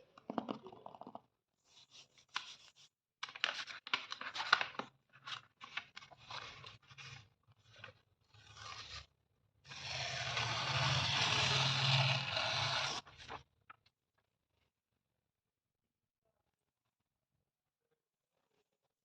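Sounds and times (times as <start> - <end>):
paper tearing: 8.3 - 9.1, 9.7 - 13.4.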